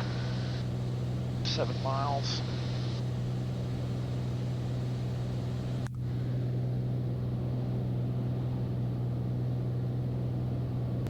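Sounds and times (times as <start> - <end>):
aircraft engine and propeller drone: 0.0 - 11.0.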